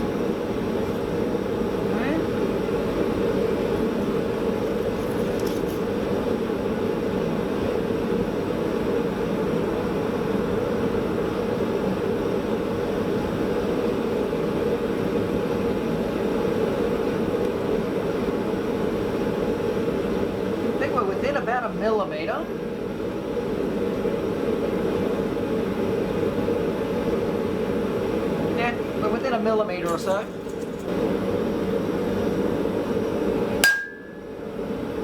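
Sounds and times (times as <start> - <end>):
forge burner rushing: 25.9 - 34.4.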